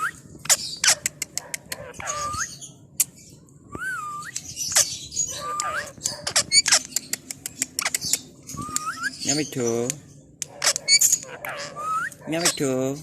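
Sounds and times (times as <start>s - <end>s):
parrot chattering and whistling: 0.0s - 2.6s, 3.9s - 9.4s, 10.6s - 12.6s
parrot clicks and squeaky chirps: 0.0s - 12.7s.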